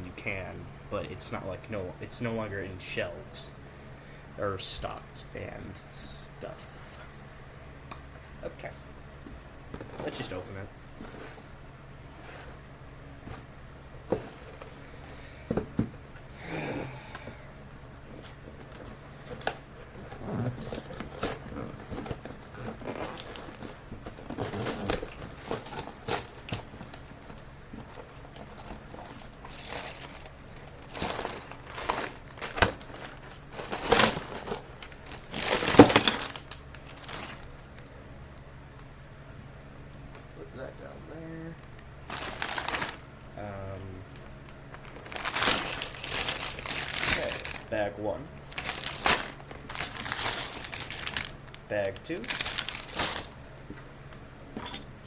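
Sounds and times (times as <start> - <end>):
cardboard tearing and rustling: 18.1 - 27.1, 27.8 - 37.5, 42.1 - 43.0, 44.8 - 47.8, 48.4 - 51.4, 52.1 - 53.6
plastic bags crinkling: 18.1 - 37.9, 41.6 - 43.1, 44.1 - 53.7.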